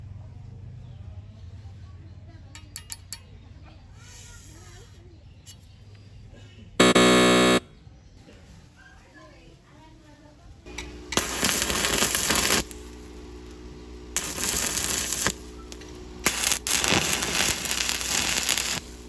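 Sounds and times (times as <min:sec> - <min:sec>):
steady electrical hum: 0:06.8 - 0:07.6, 0:10.7 - 0:19.0
welding arc crackling: 0:06.8 - 0:07.6, 0:10.7 - 0:19.0.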